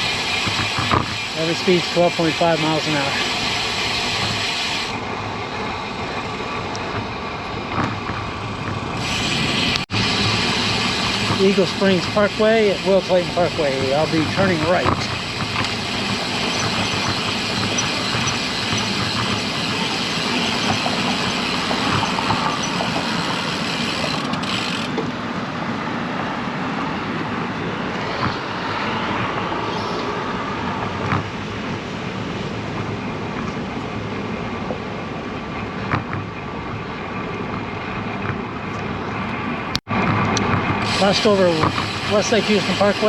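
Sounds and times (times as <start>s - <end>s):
road noise from bike: 0.0s - 43.0s
wind rushing on microphone: 25.1s - 43.0s.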